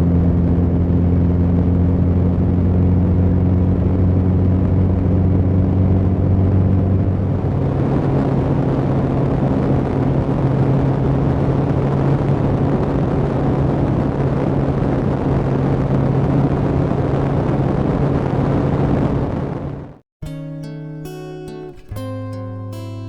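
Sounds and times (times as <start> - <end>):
motorcycle engine cruising: 0.0 - 11.5
wind noise rushing: 7.0 - 20.0.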